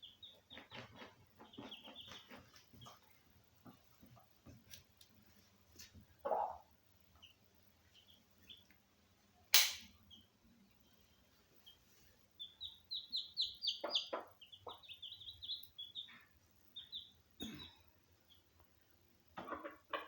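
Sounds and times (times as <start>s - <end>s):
chicks peeping: 0.0s - 5.0s, 5.9s - 9.1s, 10.0s - 20.0s
hen clucking: 6.2s - 7.4s, 12.4s - 17.6s
sharp click: 9.5s - 9.9s.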